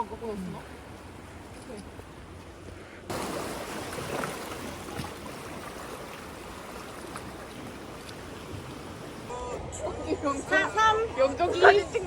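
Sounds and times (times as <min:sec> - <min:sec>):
sea waves rushing: 0:03.0 - 0:09.5.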